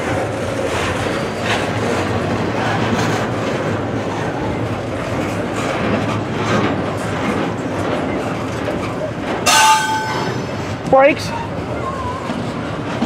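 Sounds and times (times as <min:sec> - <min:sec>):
freight train rumbling: 0:00.0 - 0:13.0
wheels clacking over rail joints: 0:00.0 - 0:13.0
train brakes: 0:09.4 - 0:10.6.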